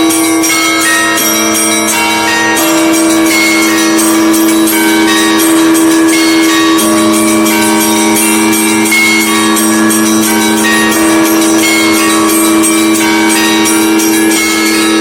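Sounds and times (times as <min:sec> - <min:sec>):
hum of large bells: 0:00.0 - 0:15.0
small bells struck rapidly: 0:00.0 - 0:15.0.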